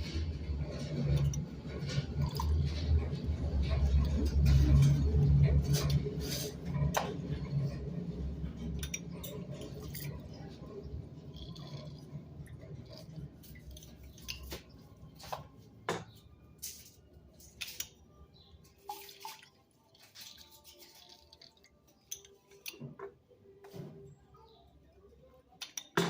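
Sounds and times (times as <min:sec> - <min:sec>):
kitchen utensils clicking and tapping: 0:00.0 - 0:18.0, 0:25.6 - 0:26.0.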